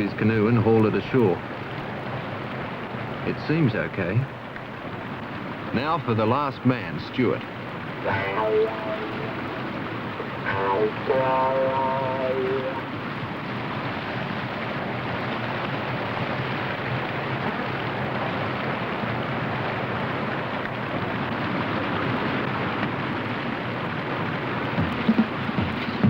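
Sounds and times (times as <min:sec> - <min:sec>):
whitewater rushing: 0:08.0 - 0:13.0.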